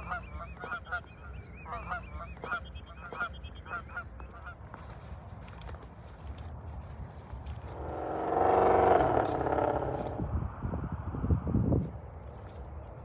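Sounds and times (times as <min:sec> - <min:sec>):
geese honking: 0:00.0 - 0:05.1.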